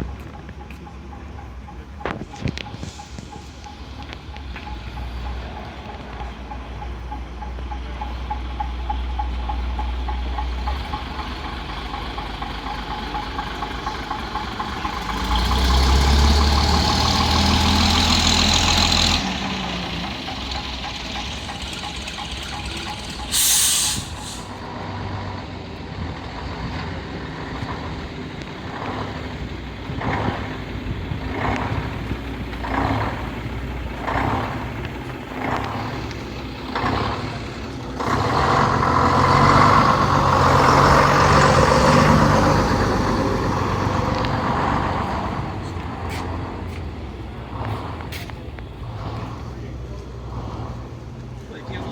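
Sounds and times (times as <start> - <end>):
bus diesel engine running: 0.0 - 51.9
air brakes hissing: 2.6 - 4.4, 20.5 - 24.6.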